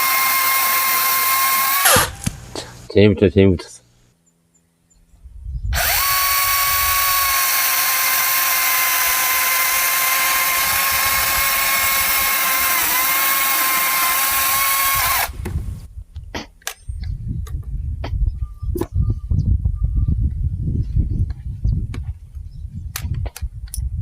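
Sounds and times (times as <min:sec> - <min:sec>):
cordless chainsaw whining: 0:00.0 - 0:02.3, 0:05.8 - 0:15.5.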